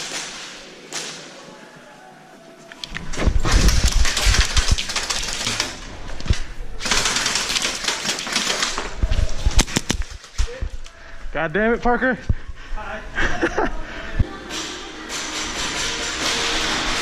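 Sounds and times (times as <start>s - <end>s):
airsoft guns firing rapidly: 3.5s - 5.8s, 6.8s - 10.0s.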